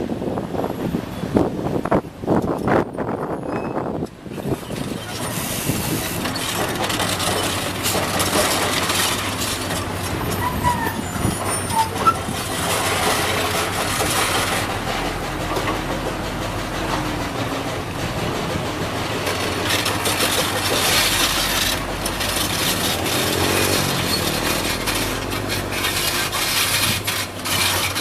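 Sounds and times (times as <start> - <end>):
short high squeaks: 3.4 - 6.6, 9.0 - 13.0, 20.9 - 28.0
excavator diesel engine running: 4.0 - 28.0
metal clatter and scrape: 4.3 - 28.0.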